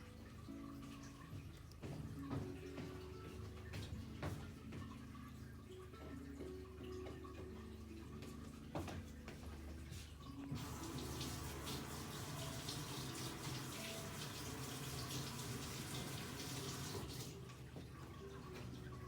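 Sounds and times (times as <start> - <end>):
soft background music: 0.0 - 19.0
rushing hiss of running water: 10.6 - 17.2.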